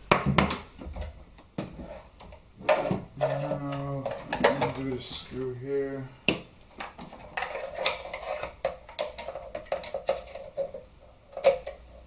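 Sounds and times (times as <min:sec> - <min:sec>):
metal clinking and scraping: 0:07.1 - 0:11.8.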